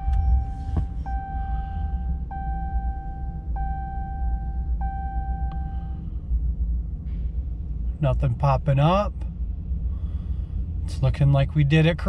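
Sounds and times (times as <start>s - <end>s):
car warning chime: 0.0s - 6.0s
truck engine rumbling: 0.0s - 12.0s.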